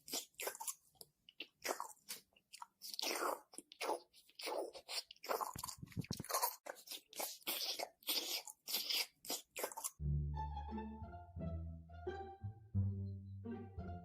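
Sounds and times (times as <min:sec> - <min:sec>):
crunchy chewing: 0:00.0 - 0:10.0
music: 0:10.0 - 0:14.0.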